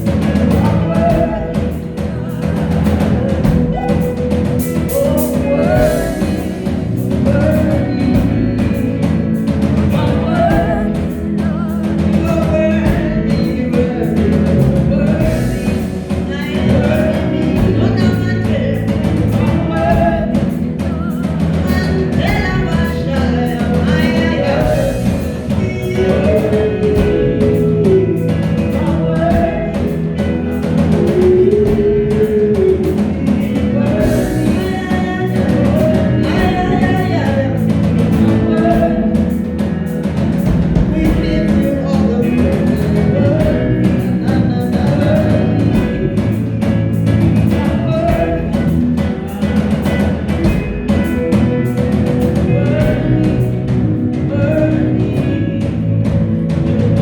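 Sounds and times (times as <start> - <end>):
band with drums bass and guitar: 0.0 - 57.0
voices singing: 0.0 - 57.0.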